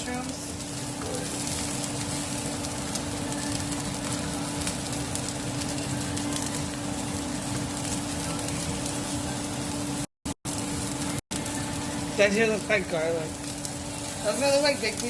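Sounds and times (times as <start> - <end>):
mushrooms sizzling in oil: 0.0 - 15.0.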